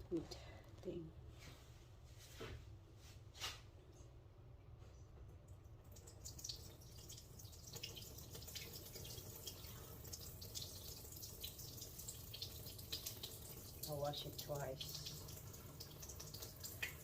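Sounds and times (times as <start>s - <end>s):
water dripping from strainer: 5.4s - 17.0s.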